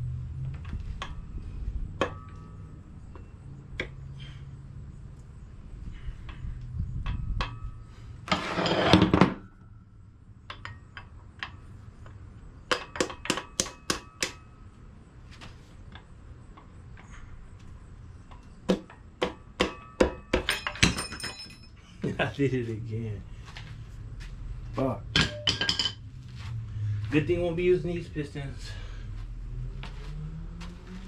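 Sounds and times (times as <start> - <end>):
ringing metallic taps: 2.0 - 4.0, 7.0 - 7.9, 25.1 - 26.1.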